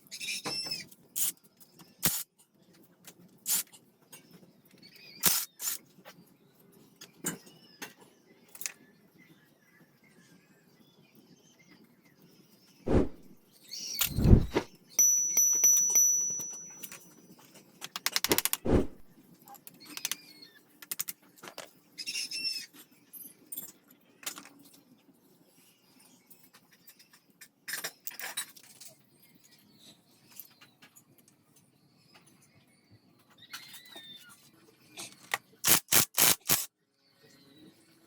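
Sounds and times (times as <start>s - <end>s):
metal ringing high tone: 15.0s - 17.0s
metal tools knocking and clicking: 15.0s - 17.1s.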